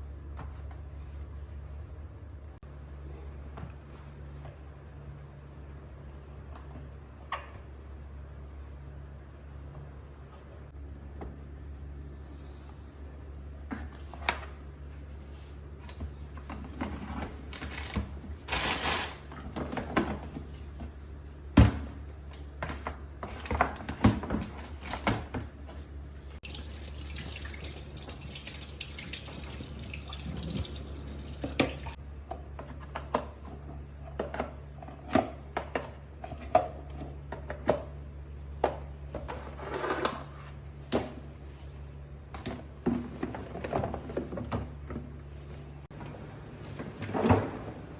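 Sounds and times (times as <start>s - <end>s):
tap running into a sink: 26.4s - 32.0s.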